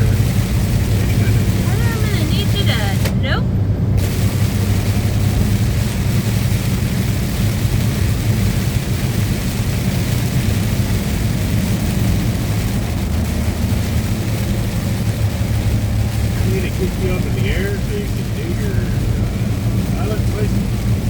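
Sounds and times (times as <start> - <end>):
truck engine drone: 0.0 - 21.0
wind noise: 0.0 - 21.0.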